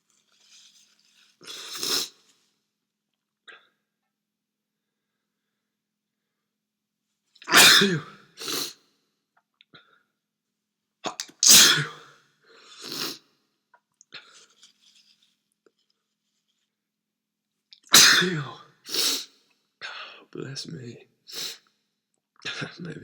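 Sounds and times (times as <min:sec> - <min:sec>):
person sneezing: 0:07.5 - 0:08.7, 0:11.4 - 0:12.1, 0:17.9 - 0:19.3
faint breathy sounds: 0:19.1 - 0:20.4.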